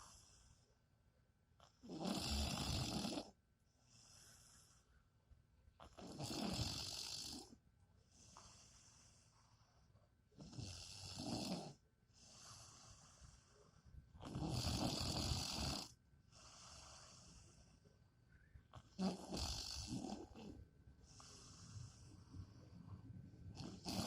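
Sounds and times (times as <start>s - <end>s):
quiet breaths: 0.0s - 24.0s
person snoring: 1.8s - 3.3s, 6.0s - 7.5s, 10.4s - 11.8s, 14.2s - 16.7s, 19.0s - 20.6s, 23.6s - 24.0s.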